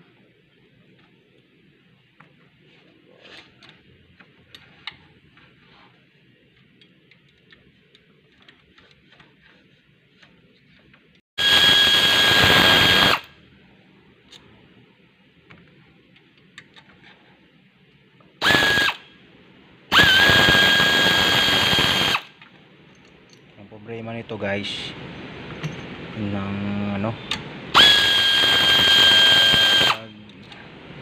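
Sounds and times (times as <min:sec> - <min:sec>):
electric power drill whirring: 0:11.4 - 0:13.3, 0:18.4 - 0:19.0, 0:19.9 - 0:22.4, 0:27.7 - 0:30.1.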